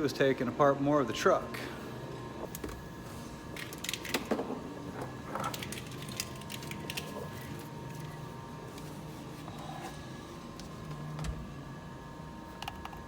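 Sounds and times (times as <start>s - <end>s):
steady low hum: 0.0s - 13.0s
plastic parts clicking and clattering: 5.3s - 7.4s.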